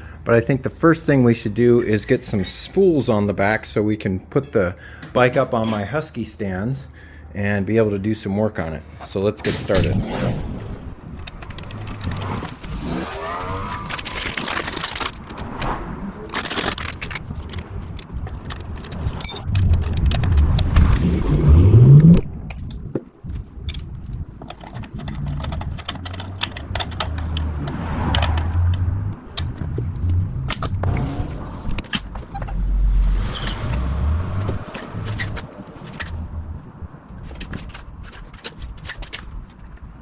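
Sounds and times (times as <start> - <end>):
metal tools clinking and rattling: 9.4 - 9.9, 13.9 - 15.3, 16.3 - 20.1, 23.6 - 27.0.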